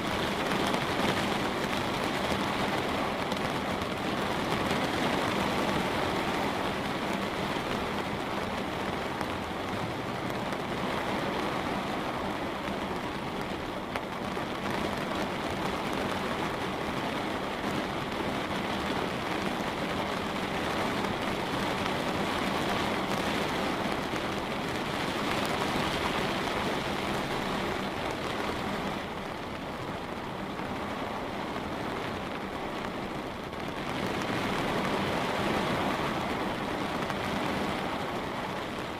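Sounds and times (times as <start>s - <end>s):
light rain on a window: 0.0s - 38.9s.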